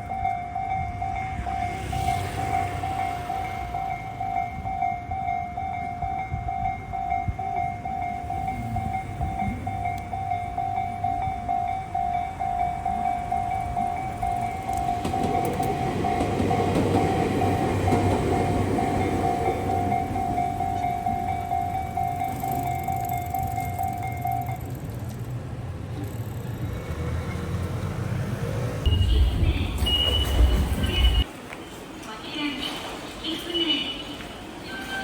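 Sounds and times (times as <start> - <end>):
level crossing bell ringing: 0.0 - 24.9
train rumbling past: 0.0 - 31.4.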